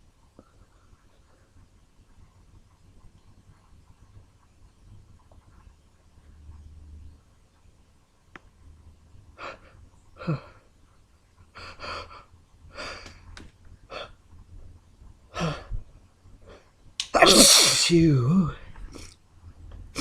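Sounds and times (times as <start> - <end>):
person gasping and sniffing: 15.4 - 15.8.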